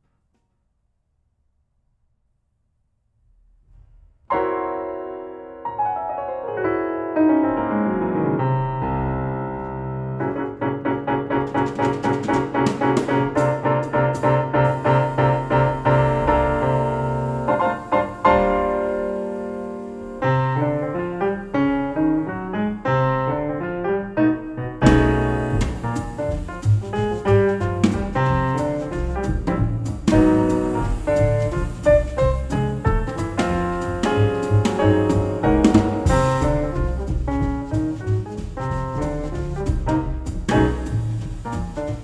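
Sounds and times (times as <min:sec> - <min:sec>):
piano music over loudspeakers: 0:04.3 - 0:42.0.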